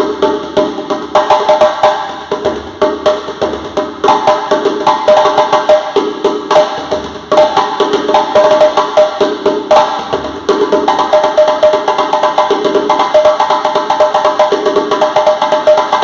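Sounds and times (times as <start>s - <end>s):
drum struck in quick rhythm: 0.0s - 16.0s.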